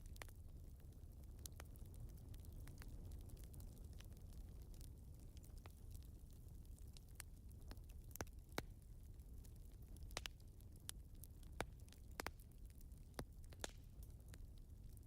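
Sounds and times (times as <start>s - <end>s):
fireplace crackling and popping: 0.0s - 15.0s.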